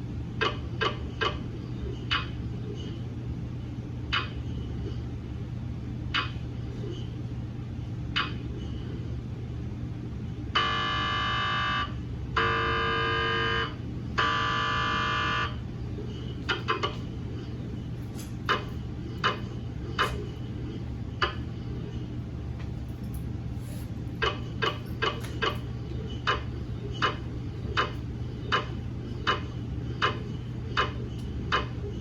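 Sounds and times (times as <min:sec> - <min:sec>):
steady low hum: 0:00.0 - 0:32.0
mri scanner buzzing tones: 0:10.4 - 0:32.0
mri scanner knocking: 0:10.6 - 0:22.4, 0:24.1 - 0:32.0.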